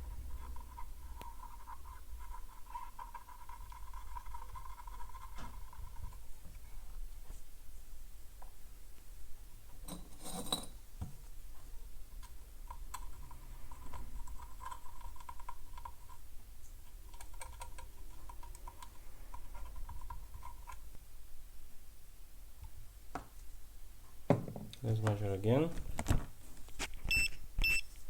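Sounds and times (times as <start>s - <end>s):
small tools clicking and scratching: 12.2s - 16.2s.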